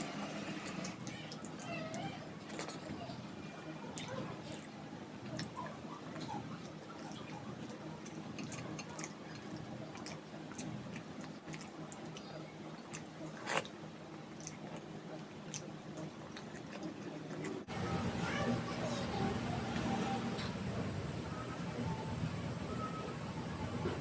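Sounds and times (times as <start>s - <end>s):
low steady hum: 0.0s - 24.0s
wet chewing with mouth clicks: 0.6s - 3.2s, 3.9s - 17.7s.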